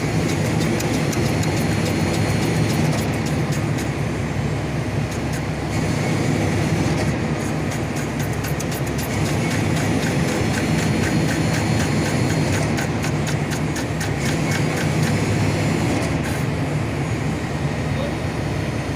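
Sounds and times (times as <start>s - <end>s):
fast regular ticking: 0.0s - 4.0s, 7.4s - 15.4s
truck diesel engine running: 0.0s - 18.9s.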